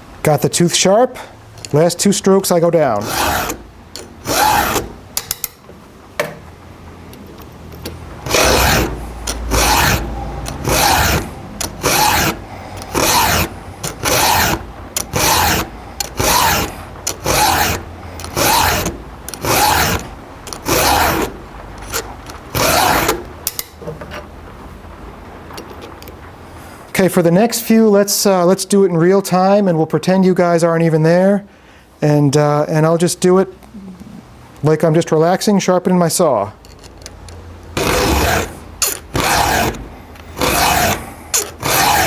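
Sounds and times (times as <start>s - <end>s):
file rasping on chain: 3.0s - 5.4s, 8.2s - 23.3s, 37.8s - 42.0s.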